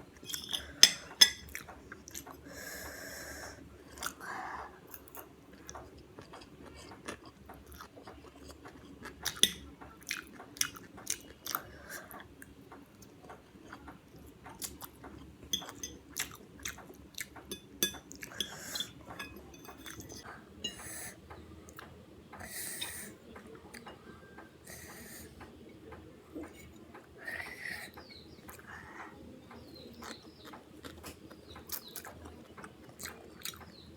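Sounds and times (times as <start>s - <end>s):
close chewing of food: 0.0s - 33.9s.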